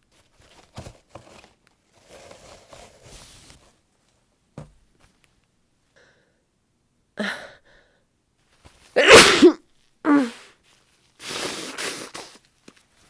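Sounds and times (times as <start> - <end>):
woman sneezing: 9.0 - 10.5
sharp intake of breath: 11.2 - 12.2.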